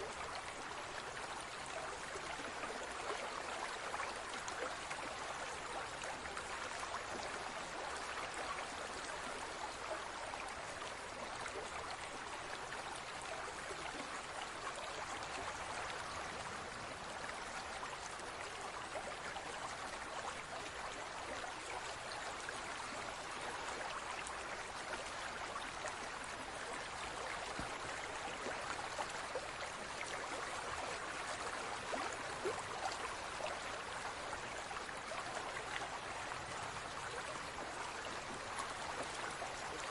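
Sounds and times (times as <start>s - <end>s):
aquarium water trickling and bubbling: 0.0s - 39.9s.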